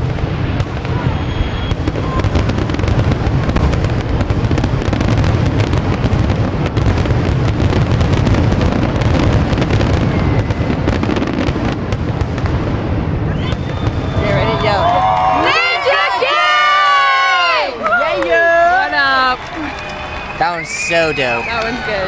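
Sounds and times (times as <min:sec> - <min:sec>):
fireworks bangs and crackles: 0:00.0 - 0:22.0
low rumble: 0:02.0 - 0:06.6.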